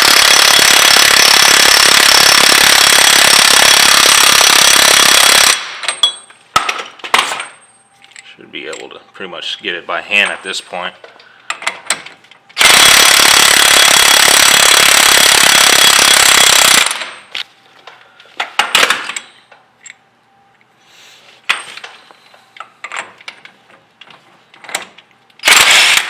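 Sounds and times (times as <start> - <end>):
impact wrench hammering: 0.0 - 7.5.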